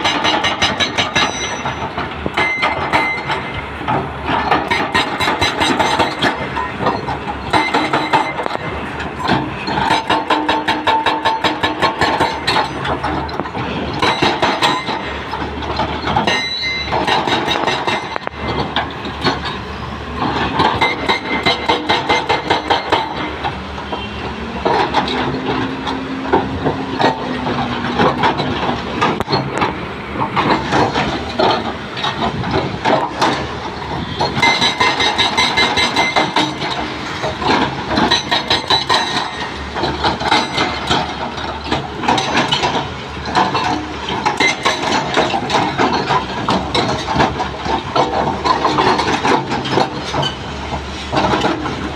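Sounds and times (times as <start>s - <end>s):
hydraulic breaker hammering: 0.0s - 19.6s, 20.3s - 51.9s
excavator engine running: 0.0s - 51.9s.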